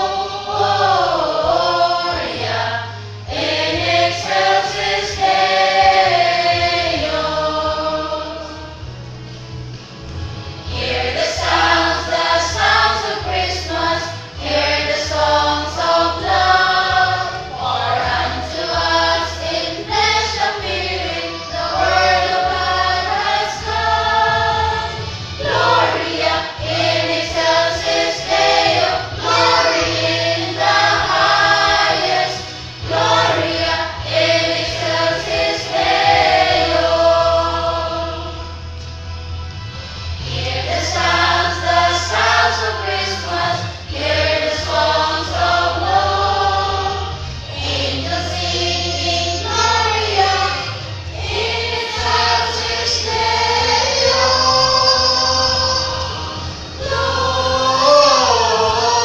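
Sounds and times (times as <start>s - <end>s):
choir singing: 0.0s - 8.9s, 10.6s - 38.7s, 40.2s - 59.0s
low instrumental accompaniment: 0.0s - 59.0s.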